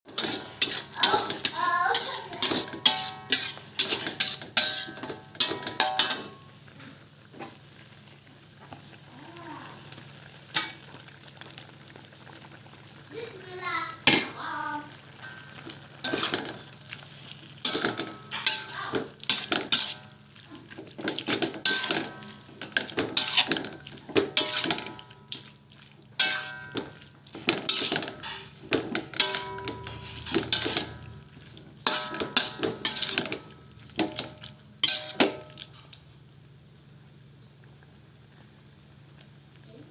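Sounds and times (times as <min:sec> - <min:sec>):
metal utensil scraping a pan: 0:00.1 - 0:06.5, 0:10.5 - 0:10.8, 0:15.2 - 0:20.2, 0:21.0 - 0:25.5, 0:26.2 - 0:35.9.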